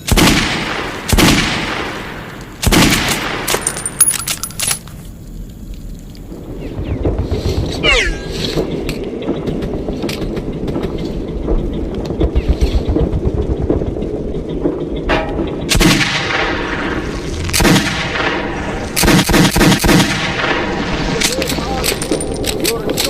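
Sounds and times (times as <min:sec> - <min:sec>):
revolver gunshots: 0:00.0 - 0:03.8, 0:15.6 - 0:22.4
low rumbling background: 0:00.1 - 0:23.0.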